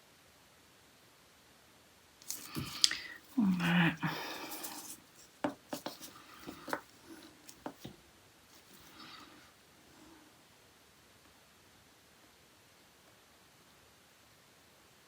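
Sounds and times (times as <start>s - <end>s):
person humming: 2.3s - 5.0s.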